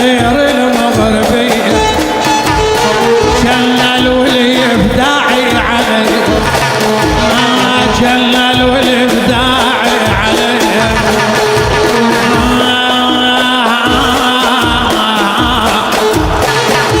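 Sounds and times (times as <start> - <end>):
steady drum beat: 0.0 - 17.0
sustained accompaniment: 0.0 - 17.0
wavering melodic lead: 1.8 - 5.2, 5.8 - 13.8.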